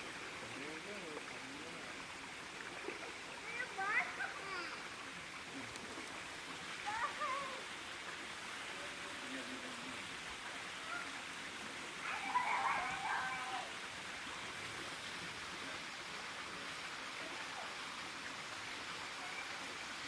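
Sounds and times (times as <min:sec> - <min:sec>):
waterfall rushing: 0:05.6 - 0:07.7, 0:12.0 - 0:20.0.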